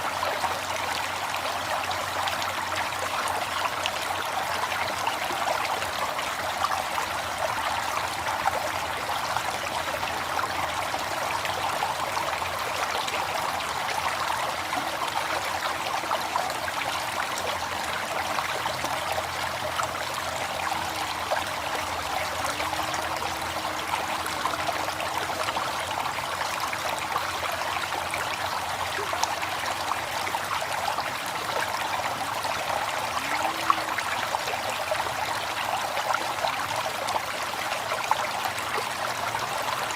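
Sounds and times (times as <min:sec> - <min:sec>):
river water flowing: 0:00.0 - 0:39.9
faint wavering low tone: 0:09.8 - 0:28.2.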